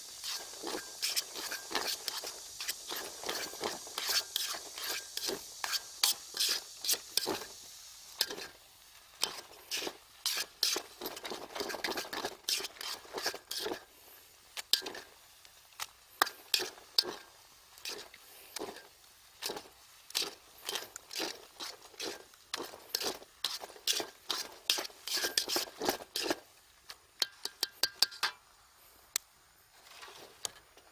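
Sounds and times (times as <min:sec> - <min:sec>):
metal utensil scraping a pot: 0:00.2 - 0:07.5, 0:08.2 - 0:08.5, 0:09.2 - 0:13.8, 0:14.7 - 0:15.1, 0:16.2 - 0:17.2, 0:17.8 - 0:26.4, 0:27.2 - 0:28.4.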